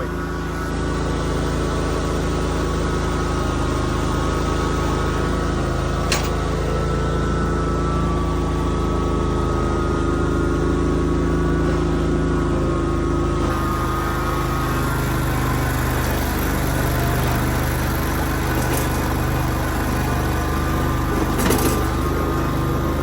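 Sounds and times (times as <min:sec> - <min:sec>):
riding mower engine running: 0:00.0 - 0:23.0.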